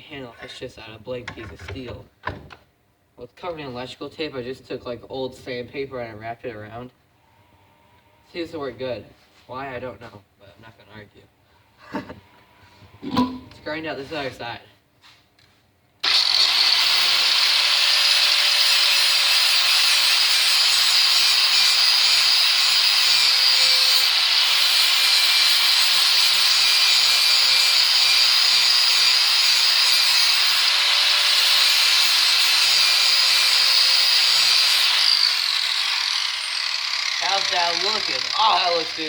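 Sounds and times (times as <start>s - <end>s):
power grinder grinding steel: 16.0s - 39.0s.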